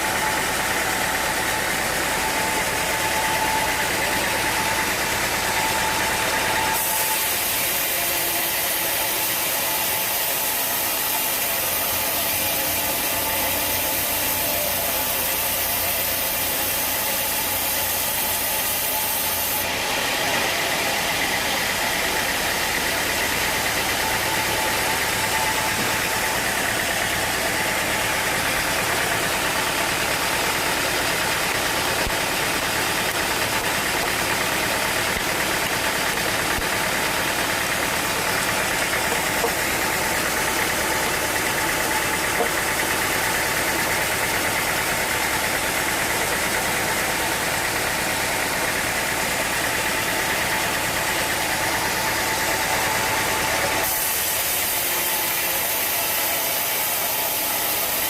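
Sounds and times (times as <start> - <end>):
sawmill machinery drone: 0.0 - 58.0.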